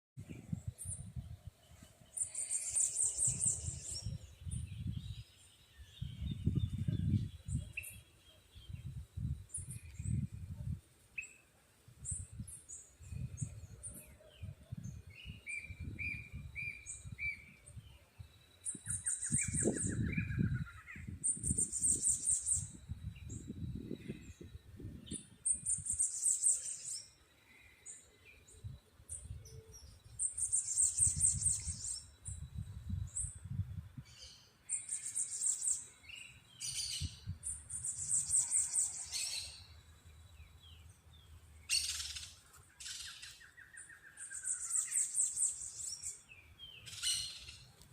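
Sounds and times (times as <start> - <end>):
birds chirping and calling: 1.8 - 10.5, 18.6 - 47.8.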